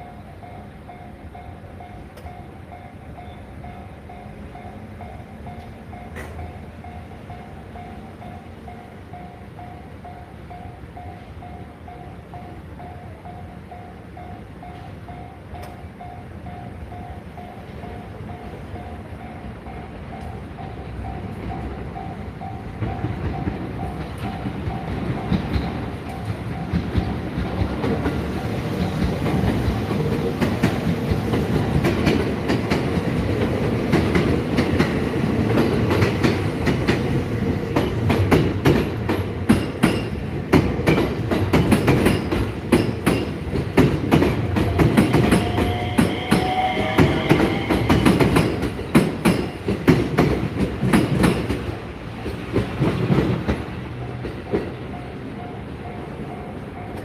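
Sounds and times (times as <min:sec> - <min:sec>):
train wheel squeal: 0:00.0 - 0:12.1, 0:44.6 - 0:49.8
train wheels clacking on rails: 0:00.0 - 0:57.0.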